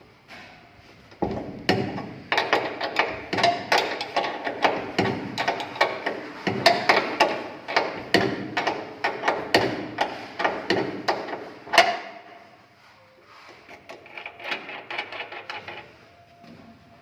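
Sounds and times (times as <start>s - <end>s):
hammer striking metal frame: 1.2s - 12.4s.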